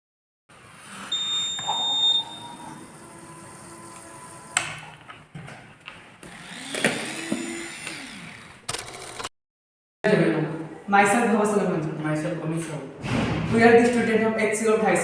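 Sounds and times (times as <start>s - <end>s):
high electronic buzzer beep: 1.0s - 3.5s.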